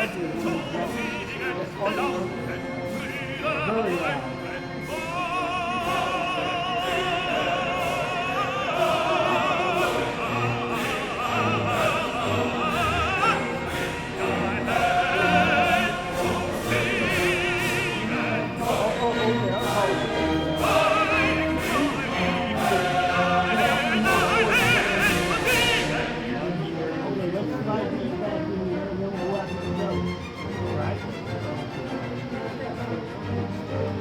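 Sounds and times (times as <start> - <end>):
operatic voice singing: 0.0 - 27.2
orchestral accompaniment: 0.0 - 34.0.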